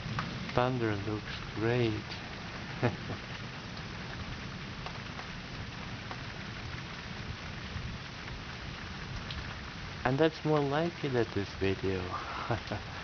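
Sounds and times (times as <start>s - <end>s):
steady rain falling: 0.0s - 13.0s
faint drip ticks: 0.1s - 0.6s, 4.8s - 5.3s, 9.2s - 9.4s.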